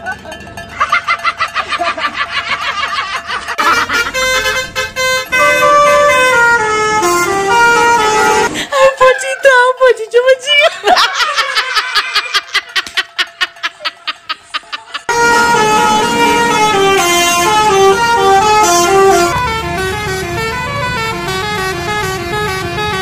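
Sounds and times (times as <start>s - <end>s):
bus horn short toots: 3.6s - 8.6s, 15.1s - 23.0s
multi-tone horn melody: 3.6s - 8.6s, 15.1s - 23.0s.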